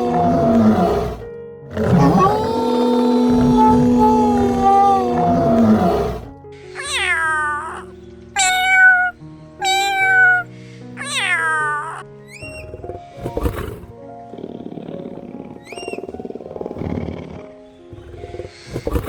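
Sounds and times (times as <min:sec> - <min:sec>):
background music with held notes: 0:00.0 - 0:19.0
cat meowing: 0:01.8 - 0:05.8, 0:06.7 - 0:13.4, 0:15.6 - 0:16.2.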